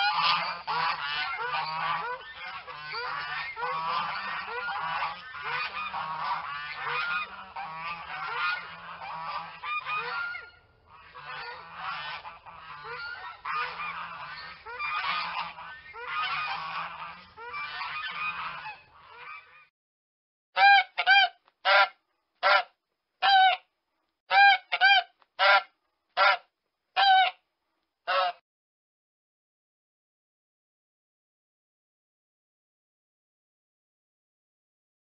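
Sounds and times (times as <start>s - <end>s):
geese honking: 0.0s - 19.7s, 20.6s - 23.6s, 24.3s - 27.4s, 28.1s - 28.4s.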